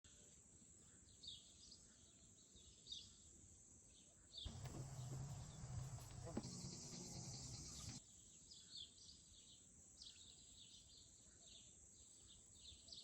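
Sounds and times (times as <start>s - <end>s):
small birds chirping: 4.4s - 13.0s
low hum with hiss: 4.5s - 8.0s.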